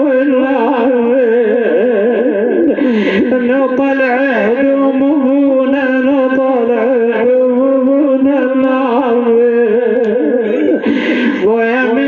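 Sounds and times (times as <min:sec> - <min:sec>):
man chanting a lament: 0:00.0 - 0:12.0.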